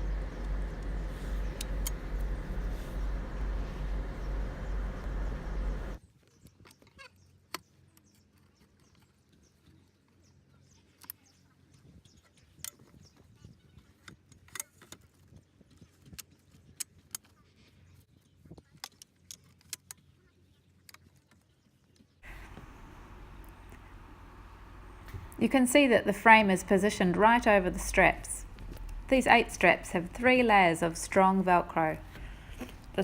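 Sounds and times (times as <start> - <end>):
faint low hum: 0.0 - 6.0, 22.2 - 33.0.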